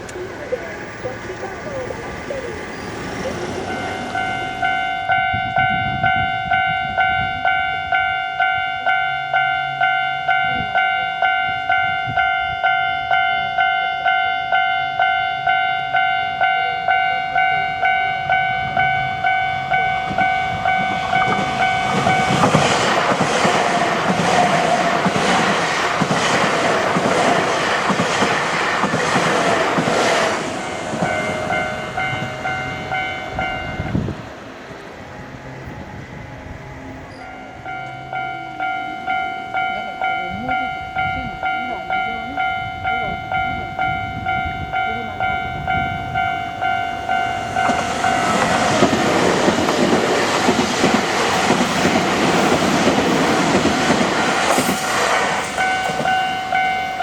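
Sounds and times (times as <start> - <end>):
level-crossing warning bell: 0.0 - 57.0
train wheels clattering: 19.7 - 33.6, 47.3 - 57.0.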